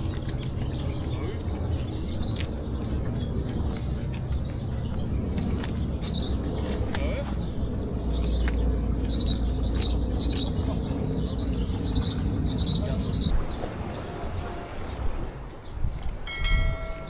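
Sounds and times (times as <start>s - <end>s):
steady low rumble: 0.0s - 17.0s
small bird calling: 6.0s - 13.3s.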